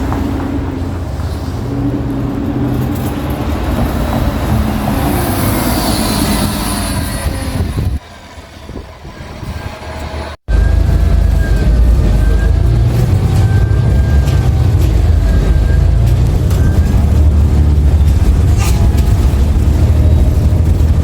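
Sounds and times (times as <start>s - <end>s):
bus drive hum and whine: 0.0s - 21.0s
road noise: 0.0s - 21.0s.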